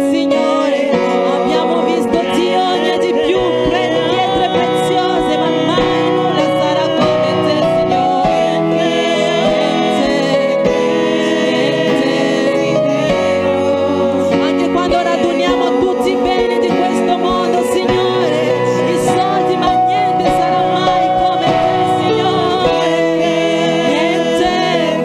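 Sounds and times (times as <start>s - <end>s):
held keyboard chords: 0.0s - 25.0s
people singing slow melody: 0.0s - 25.0s.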